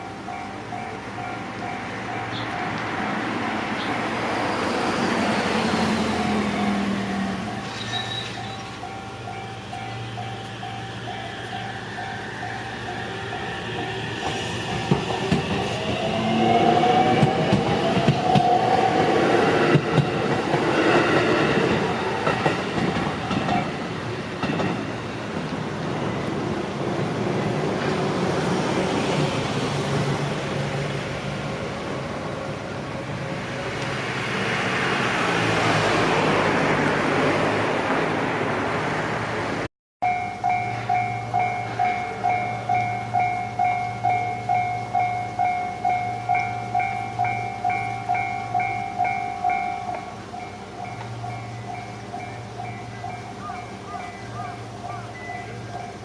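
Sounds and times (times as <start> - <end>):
level crossing warning bell: 0.0 - 4.4, 5.6 - 14.9, 40.0 - 56.0.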